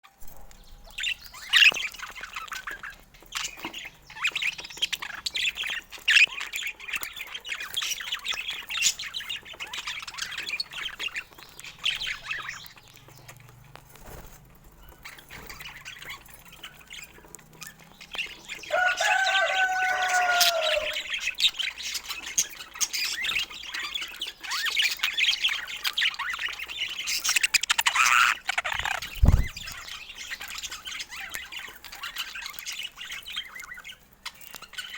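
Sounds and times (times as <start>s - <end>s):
budgerigars chattering and chirping: 0.3s - 34.9s
bird squawk: 27.4s - 30.0s
low thump: 29.0s - 29.8s.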